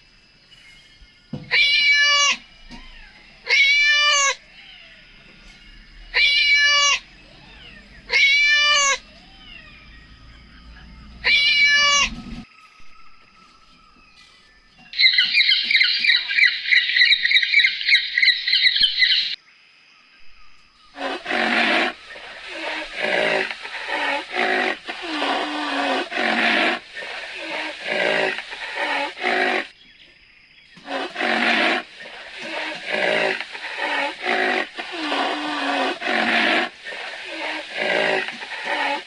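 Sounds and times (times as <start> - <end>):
short loud animal calls: 1.3 - 12.5, 20.9 - 29.8, 30.8 - 39.0
high-pitched animal chattering: 1.5 - 12.4, 30.8 - 39.0.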